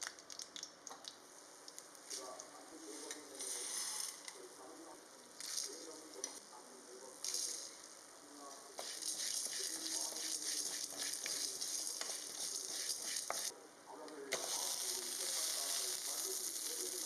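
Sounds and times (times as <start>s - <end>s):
food frying in hot oil: 8.8s - 13.5s, 14.4s - 17.0s
spatula scraping a pan: 8.8s - 13.5s.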